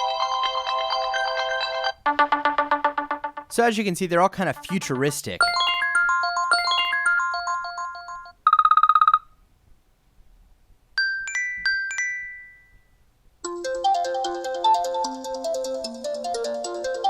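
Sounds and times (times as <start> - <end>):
melodic ringtone: 0.0 - 3.5, 4.5 - 9.2, 11.0 - 12.8, 13.4 - 17.0
ringtone with chords: 0.0 - 3.5, 4.4 - 9.3, 11.0 - 17.0
bell-like chime notes: 5.4 - 8.3.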